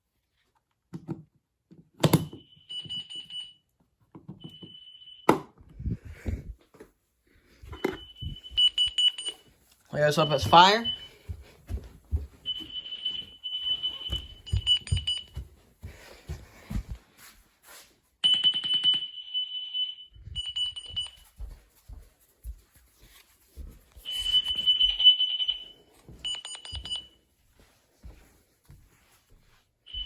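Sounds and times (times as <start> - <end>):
carbon monoxide alarm beeping: 2.0 - 3.7, 4.3 - 5.6, 7.6 - 16.0, 18.2 - 21.4, 24.0 - 27.2.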